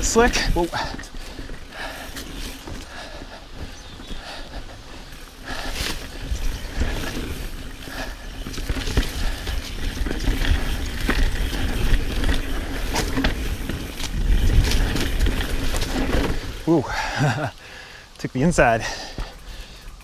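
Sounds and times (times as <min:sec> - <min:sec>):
bike chain and frame rattling: 0:00.0 - 0:17.5
bike tyres rolling over dirt: 0:00.0 - 0:20.0
wind on microphone: 0:03.5 - 0:16.6.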